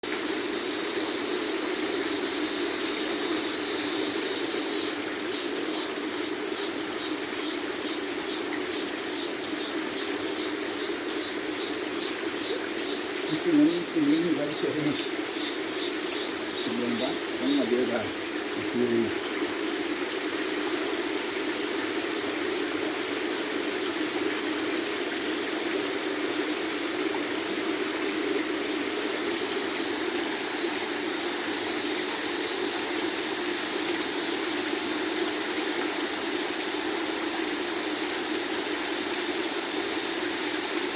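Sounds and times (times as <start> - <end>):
cicadas droning: 0.1 - 40.9
low rushing noise: 6.2 - 17.9.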